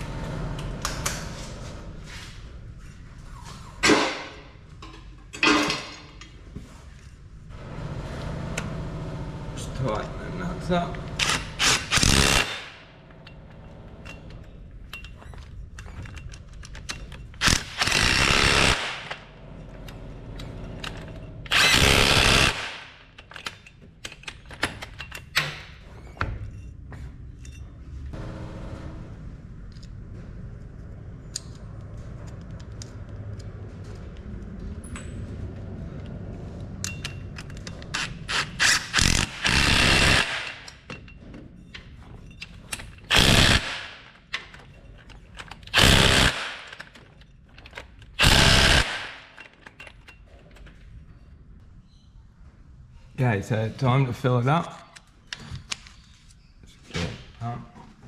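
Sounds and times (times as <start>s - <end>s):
impact wrench: 11.0s - 12.9s, 17.4s - 19.3s, 20.8s - 23.5s, 37.9s - 40.8s, 43.1s - 44.1s, 45.7s - 47.0s, 48.2s - 49.5s.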